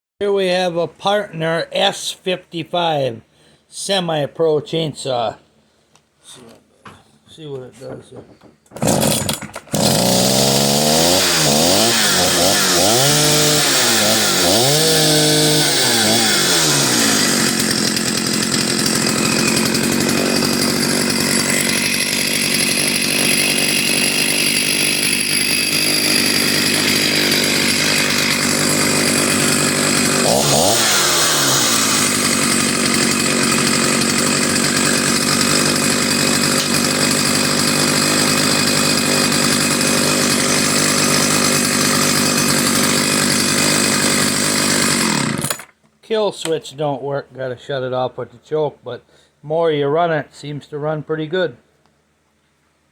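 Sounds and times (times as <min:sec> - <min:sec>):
chainsaw revving and idling: 0:08.8 - 0:45.7.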